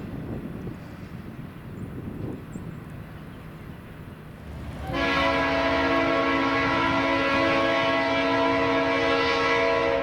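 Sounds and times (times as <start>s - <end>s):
train rumble: 0.0s - 10.0s
locomotive air horn chord: 4.7s - 10.0s.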